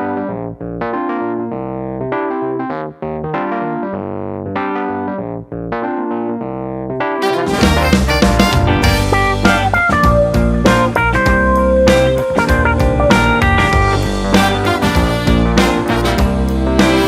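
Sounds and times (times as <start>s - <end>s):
electric piano chords: 0.0s - 17.0s
rock band with drums and guitar: 7.2s - 17.0s.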